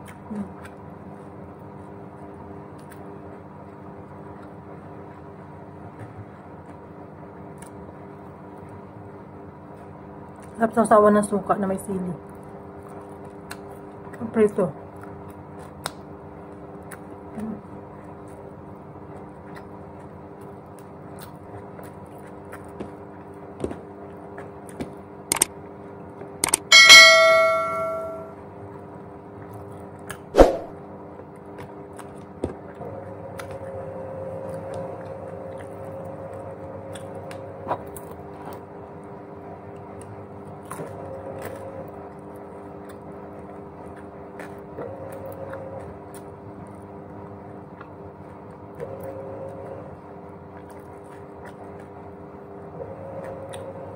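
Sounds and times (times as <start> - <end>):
steady low hum: 26.4 - 28.3
loud metallic clang: 26.7 - 28.3.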